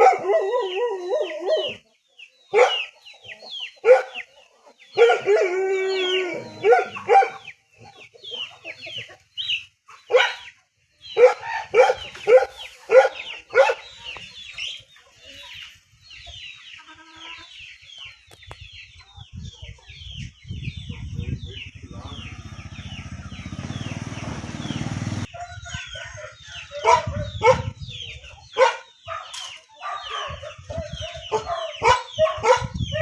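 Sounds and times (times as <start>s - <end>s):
chickens clucking: 0.0s - 26.0s, 26.7s - 33.0s
chicks peeping: 1.6s - 5.1s, 6.8s - 33.0s
rooster crowing: 25.4s - 27.0s.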